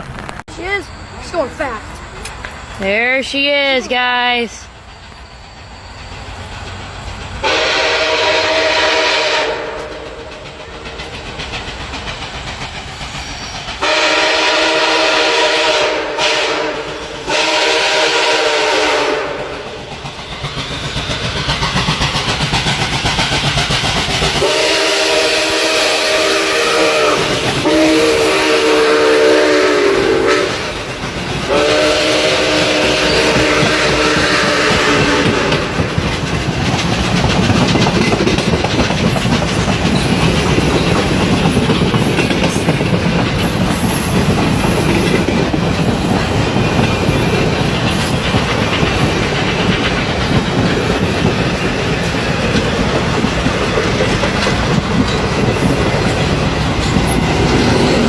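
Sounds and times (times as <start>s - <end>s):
fast train passing on rails: 0.0s - 58.0s
locomotive air horn blasts: 7.4s - 10.3s, 13.8s - 19.6s, 24.4s - 30.7s, 31.5s - 35.7s.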